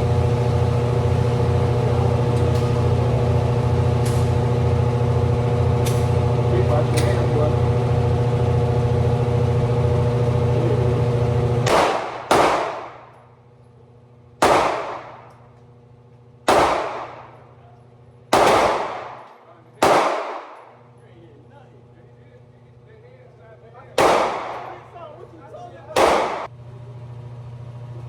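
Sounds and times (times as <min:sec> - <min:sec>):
steady low hum: 0:00.0 - 0:28.0
gunshots with ringing echo: 0:11.7 - 0:13.1, 0:14.4 - 0:15.2, 0:16.5 - 0:17.4, 0:18.3 - 0:20.7, 0:24.0 - 0:24.8, 0:26.0 - 0:26.5.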